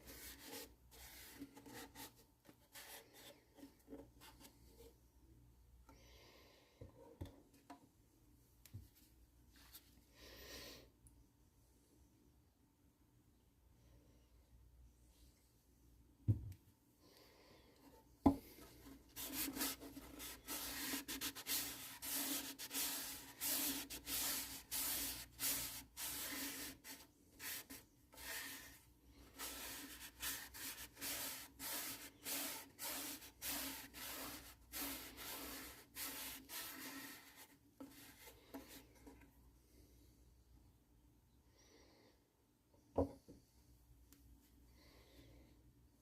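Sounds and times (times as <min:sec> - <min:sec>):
hand rubbing wooden body: 0:00.0 - 0:05.0, 0:17.8 - 0:39.3.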